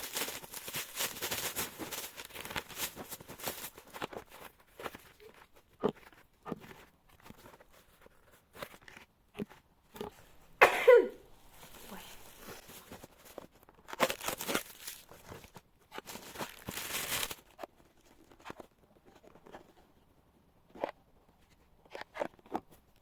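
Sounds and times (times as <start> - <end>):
packaging ripping and rustling: 0.0 - 5.4, 11.5 - 18.7.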